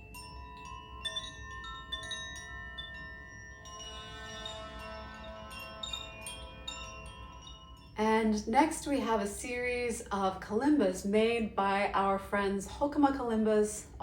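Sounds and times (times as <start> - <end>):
hanging chimes ringing: 0.0 - 8.5.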